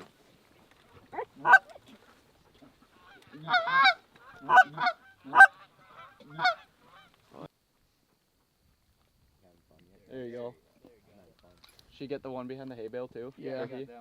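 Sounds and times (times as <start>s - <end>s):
geese honking: 1.4s - 1.7s, 3.0s - 7.1s.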